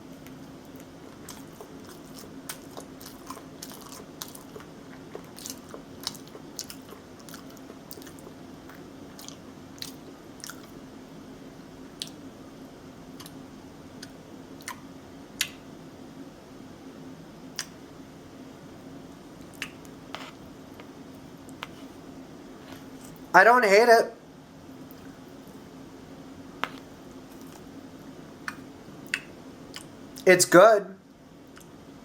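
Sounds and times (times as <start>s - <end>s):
crunchy chewing: 0.0s - 10.8s
steady low hum: 0.0s - 32.0s.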